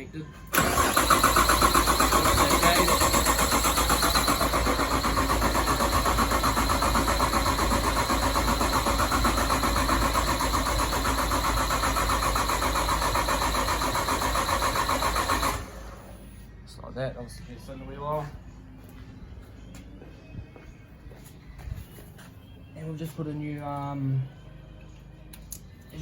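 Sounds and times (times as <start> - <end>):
engine cranking on starter motor: 0.5 - 16.4.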